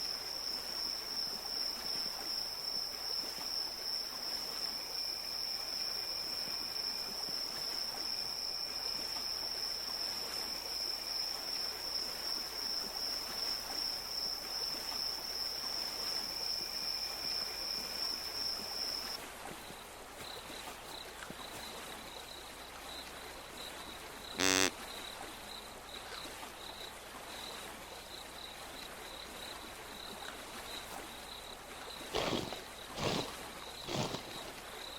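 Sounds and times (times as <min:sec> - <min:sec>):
insect chirp pulsing: 0:00.0 - 0:19.2, 0:24.3 - 0:24.7, 0:31.2 - 0:34.9
insect high-pitched trill: 0:24.4 - 0:24.7, 0:33.9 - 0:34.3
outdoor hiss: 0:24.4 - 0:24.7
short loud pitched call: 0:24.4 - 0:24.7.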